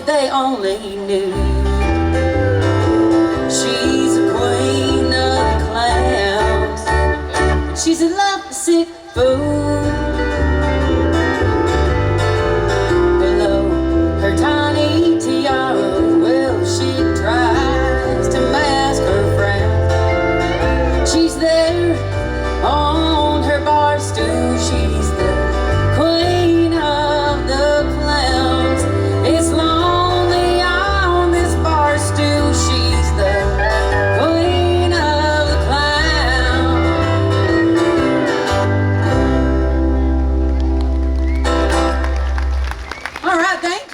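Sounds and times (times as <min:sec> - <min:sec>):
country band playing live: 0:00.0 - 0:43.8
drums: 0:00.0 - 0:43.9
walking bass: 0:01.2 - 0:08.2, 0:09.2 - 0:43.4
lead guitar bending notes: 0:01.3 - 0:08.1, 0:09.3 - 0:42.9
sliding melody line: 0:09.7 - 0:42.8.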